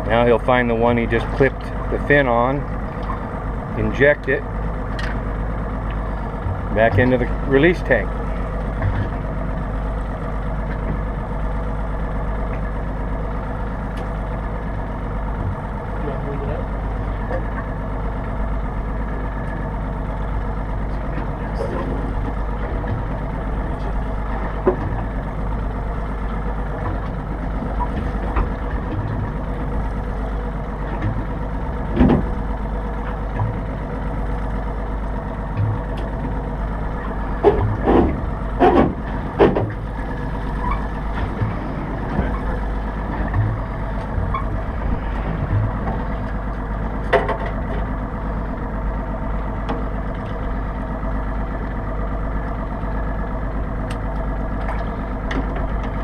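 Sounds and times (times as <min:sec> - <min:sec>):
boat motor humming: 0:00.0 - 0:56.0
knocks and clunks: 0:08.6 - 0:09.3, 0:21.0 - 0:25.3, 0:30.8 - 0:33.7, 0:35.5 - 0:47.9.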